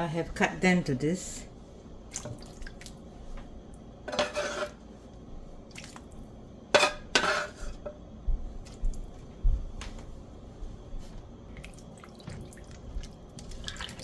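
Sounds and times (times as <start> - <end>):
utensils scraping a pot: 4.1 - 4.8, 6.8 - 7.8.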